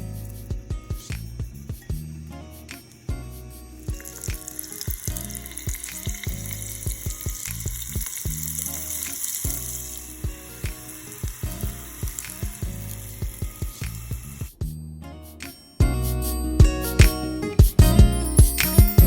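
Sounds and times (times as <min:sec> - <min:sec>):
background music with beat: 0:00.0 - 0:19.0
food sizzling in a pan: 0:04.0 - 0:13.4.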